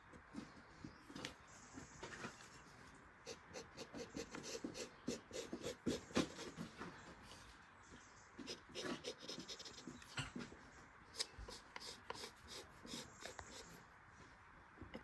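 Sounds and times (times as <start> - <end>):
faint scratching and clicks: 11.2 - 13.8.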